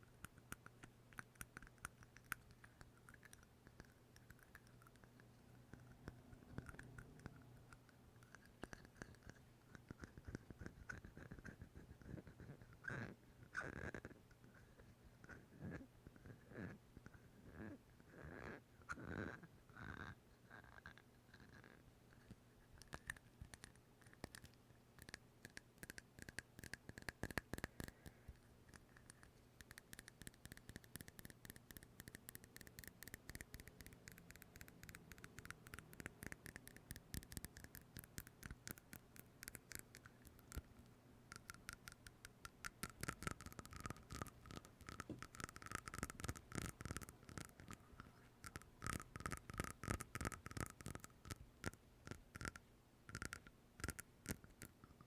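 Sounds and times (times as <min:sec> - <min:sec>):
rapid taps and scratches: 0:41.4 - 0:54.8.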